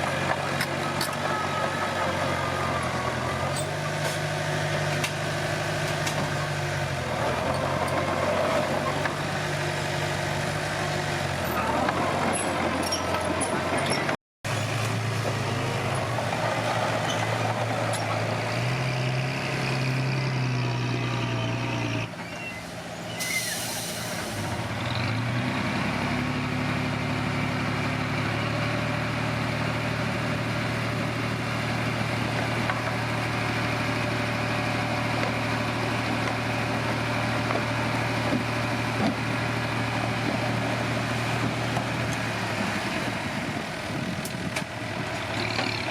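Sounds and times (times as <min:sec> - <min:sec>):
bulldozer diesel engine running: 0:00.0 - 0:45.9
brief hiss: 0:23.2 - 0:24.4.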